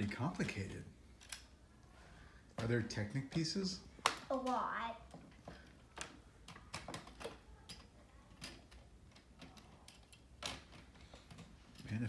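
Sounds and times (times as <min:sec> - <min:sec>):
plastic parts clicking: 0:01.2 - 0:01.6, 0:03.3 - 0:12.0.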